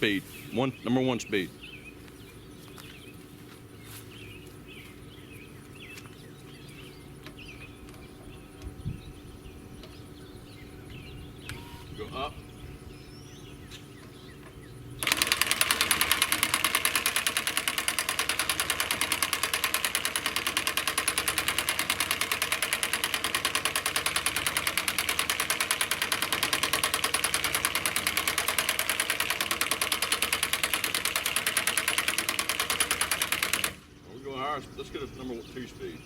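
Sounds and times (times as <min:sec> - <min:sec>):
impact wrench hammering: 0:15.0 - 0:33.8.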